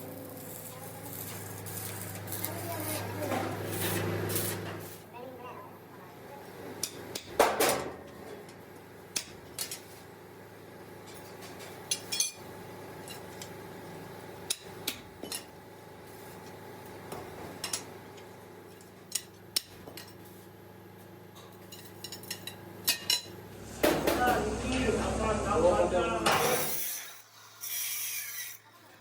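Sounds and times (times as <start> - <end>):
low workshop hum: 0.0 - 29.0.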